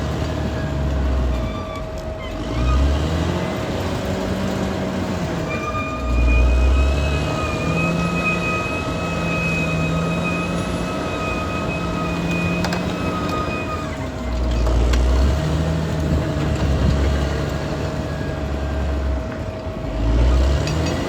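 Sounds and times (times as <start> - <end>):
bulldozer diesel engine rumble: 0.0 - 21.0
high whine: 5.3 - 14.1.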